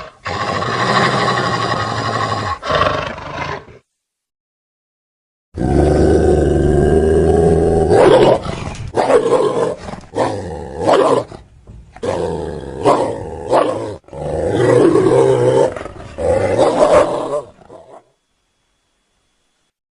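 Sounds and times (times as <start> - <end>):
growling roars: 0.0 - 3.8, 5.6 - 11.4, 12.0 - 18.1
long deep creature roar: 5.6 - 8.6, 12.0 - 17.7.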